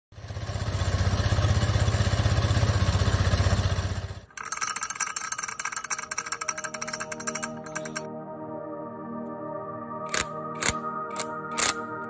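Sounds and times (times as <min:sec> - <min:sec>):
scooter engine running: 0:00.1 - 0:08.0
music: 0:06.0 - 0:12.0.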